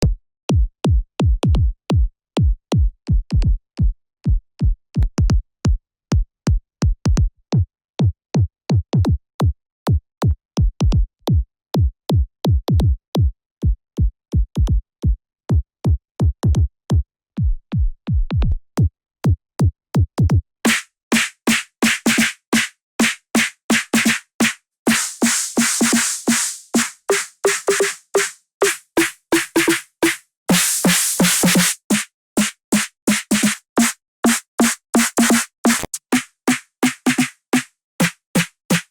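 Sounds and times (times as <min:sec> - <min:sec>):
synthesized kick drums: 0:20.2 - 0:38.9.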